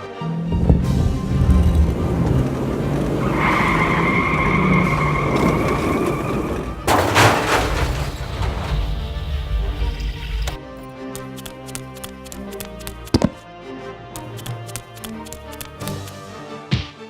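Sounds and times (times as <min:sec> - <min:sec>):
tyres screeching: 0:00.6 - 0:10.6
loud crash: 0:04.9 - 0:10.2.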